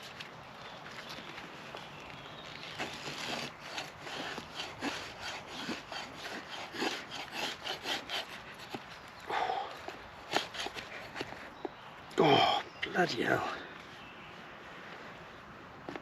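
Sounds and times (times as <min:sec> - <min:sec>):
knife blade scraping wood: 0:02.8 - 0:09.0, 0:09.8 - 0:11.5.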